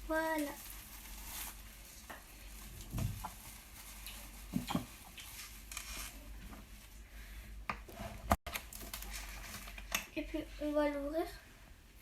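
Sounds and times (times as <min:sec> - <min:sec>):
plastic wrap rustling: 0:00.0 - 0:06.8, 0:08.5 - 0:09.9.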